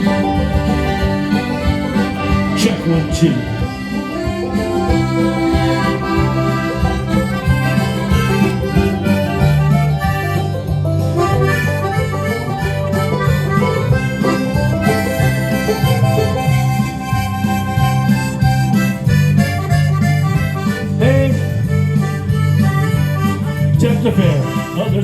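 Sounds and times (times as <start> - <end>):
accordion: 0.0 - 25.0
guitar: 0.0 - 25.0
steady drum beat: 0.0 - 25.0.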